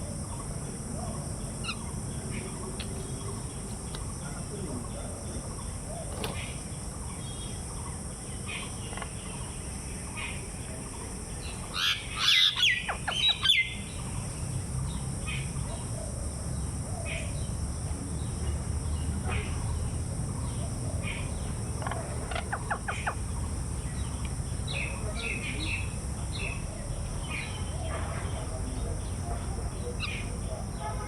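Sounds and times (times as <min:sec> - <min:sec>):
birds chirping: 0:00.0 - 0:31.0.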